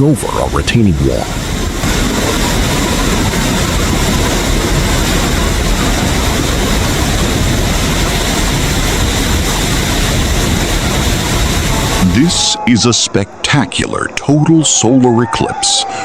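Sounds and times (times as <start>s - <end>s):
mud and water rushing over wall: 0.0s - 12.4s.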